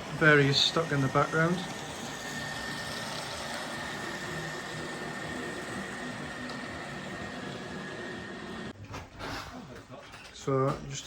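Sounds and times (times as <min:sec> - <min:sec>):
model trains humming and rumbling: 0:00.0 - 0:08.7.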